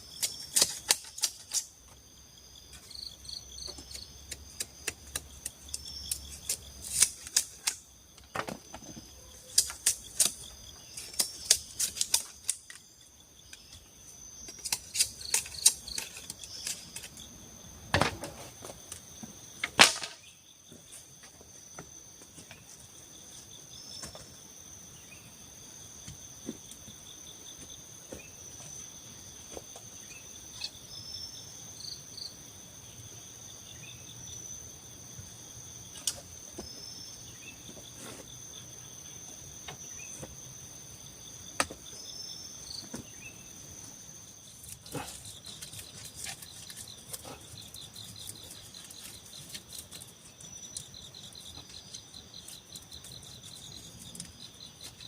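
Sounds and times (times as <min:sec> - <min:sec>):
forest insects trilling: 0:00.0 - 0:55.0
bamboo being chopped and knocked: 0:00.1 - 0:01.7, 0:03.6 - 0:12.9, 0:17.9 - 0:22.6, 0:41.5 - 0:42.0, 0:42.8 - 0:43.2.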